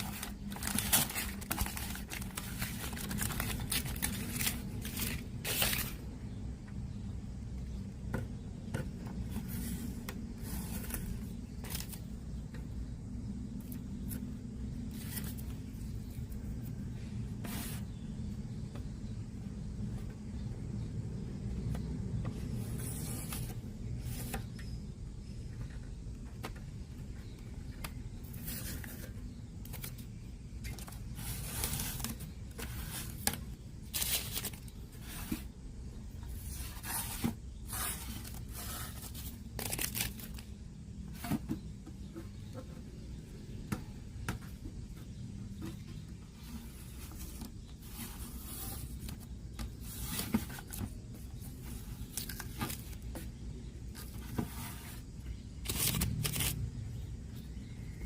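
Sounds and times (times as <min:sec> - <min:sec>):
scraping and rustling handling noises: 0:00.0 - 0:06.2, 0:08.1 - 0:12.8, 0:21.6 - 0:42.9, 0:43.7 - 0:56.6
steady low hum: 0:00.0 - 0:58.0.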